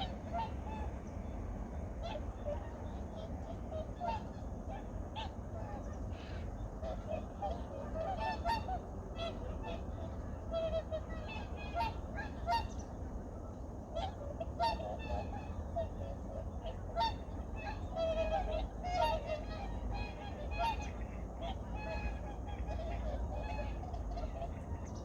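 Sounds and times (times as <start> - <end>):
geese honking: 2.0 - 25.0.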